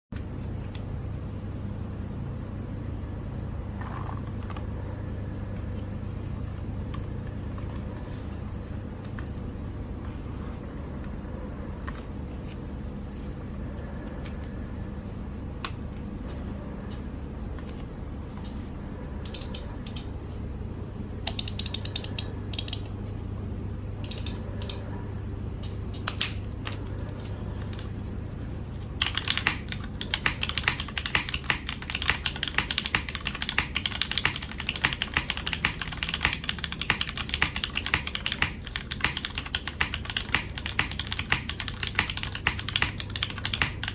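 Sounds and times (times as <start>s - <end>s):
mechanical keyboard typing: 19.2s - 20.1s, 21.2s - 22.9s, 24.0s - 24.8s, 29.0s - 43.9s.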